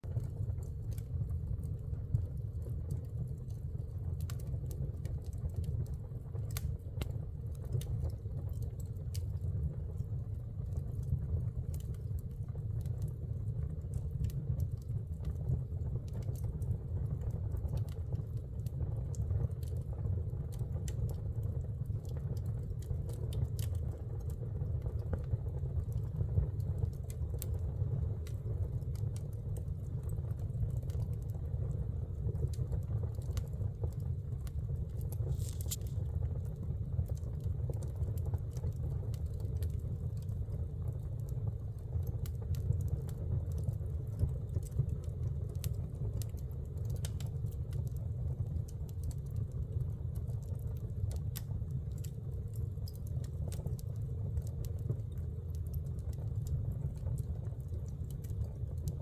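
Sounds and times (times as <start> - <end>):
wood fire crackling: 0.0 - 59.0
flames rumbling: 0.1 - 59.0
fire hissing: 35.2 - 36.0.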